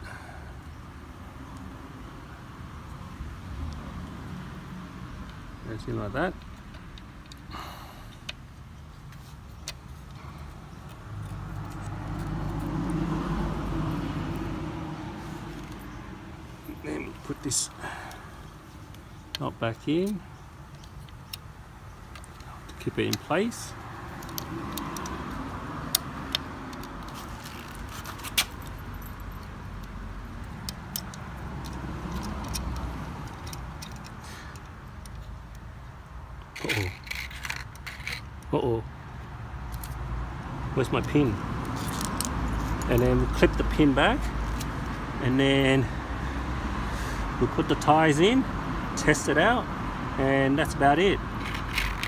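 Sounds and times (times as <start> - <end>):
vehicle engine low hum: 0.0 - 52.0
metallic clicks from brake parts: 6.3 - 13.0, 16.6 - 40.0, 41.0 - 45.0, 50.9 - 52.0
sharp metallic clicks: 18.9 - 35.7
metal clinking rustle: 26.3 - 35.6, 36.4 - 38.5, 41.0 - 44.9, 51.3 - 52.0.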